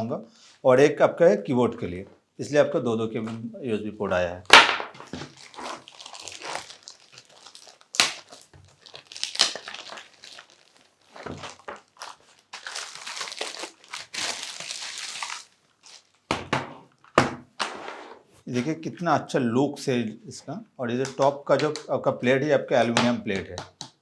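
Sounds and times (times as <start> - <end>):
plastic packaging crinkling: 4.5 - 16.3.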